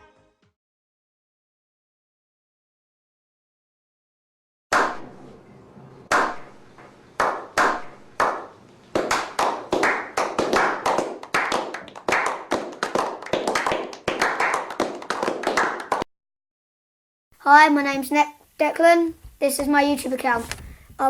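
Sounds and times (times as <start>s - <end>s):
hand clapping with room echo: 4.8s - 5.0s, 6.1s - 6.6s, 7.2s - 16.1s.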